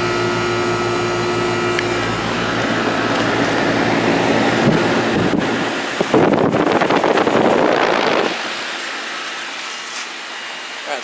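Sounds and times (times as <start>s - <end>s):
compressor hum: 0.0s - 11.0s
condenser fan rushing: 0.0s - 11.0s
wind buffeting microphone: 1.6s - 8.7s.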